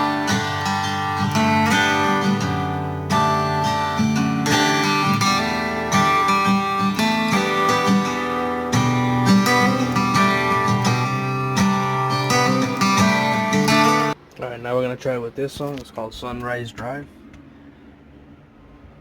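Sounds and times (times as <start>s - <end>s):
acoustic guitar music over loudspeaker: 0.0s - 14.2s.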